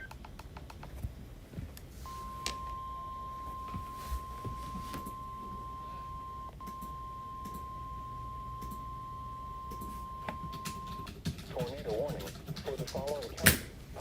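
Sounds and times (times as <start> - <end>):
high steady alert tone: 2.1 - 11.1.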